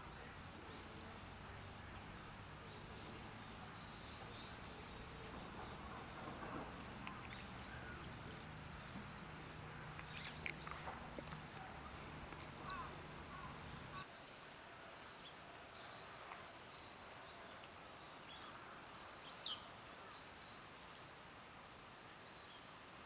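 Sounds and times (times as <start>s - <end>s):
low steady hum: 0.0s - 14.0s
bird calling high and thin: 9.9s - 14.0s.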